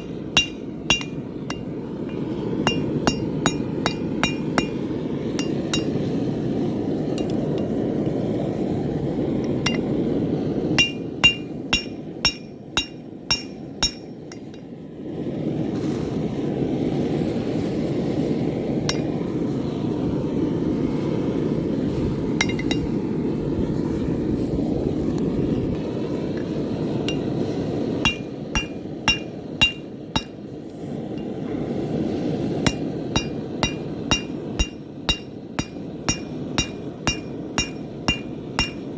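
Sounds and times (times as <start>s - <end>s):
hammer ringing on steel anvil: 0.0s - 6.0s, 9.7s - 9.9s, 10.8s - 14.6s, 22.4s - 22.9s, 28.1s - 30.4s, 32.7s - 38.9s.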